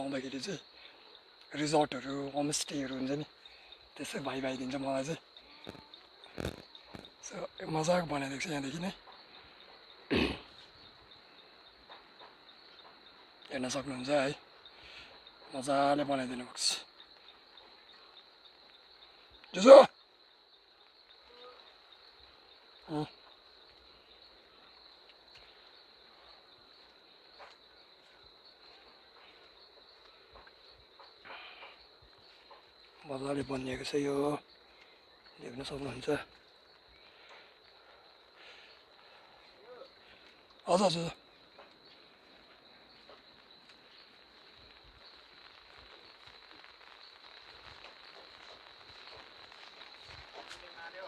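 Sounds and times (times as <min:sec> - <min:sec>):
rain pattering: 0:00.1 - 0:09.0, 0:40.0 - 0:51.0.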